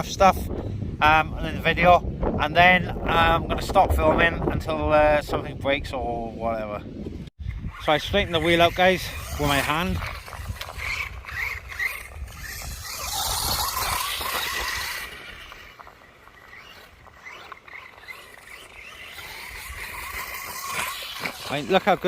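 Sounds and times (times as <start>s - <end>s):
wind rumbling on microphone: 0.0s - 22.0s
electric motor whining: 7.6s - 22.0s.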